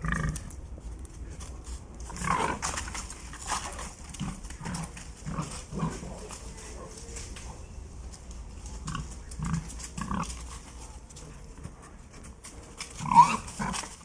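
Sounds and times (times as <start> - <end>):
pigs grunting: 0.0 - 0.6, 2.1 - 7.0, 8.6 - 11.8, 12.8 - 14.0.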